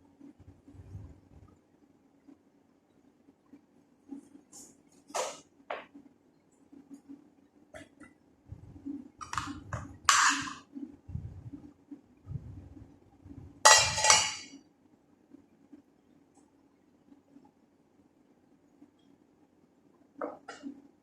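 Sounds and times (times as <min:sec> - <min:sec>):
faint low hum: 0:00.0 - 0:21.0
dishes and utensils clattering: 0:09.2 - 0:10.7, 0:13.6 - 0:14.6.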